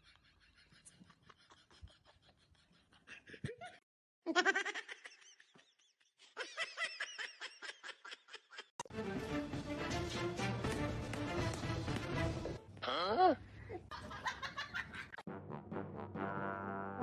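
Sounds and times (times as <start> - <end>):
rapid pulsing laughter: 0.0 - 3.8
music: 8.8 - 12.8, 15.3 - 17.0.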